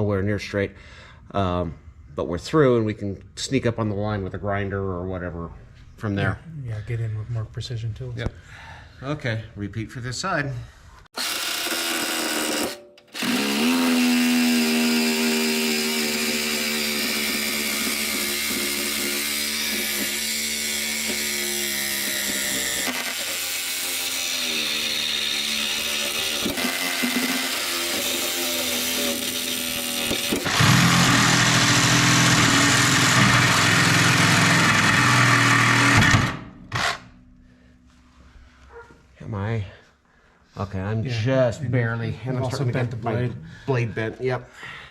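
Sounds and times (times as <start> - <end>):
reciprocating saw cutting steel: 11.2 - 37.2.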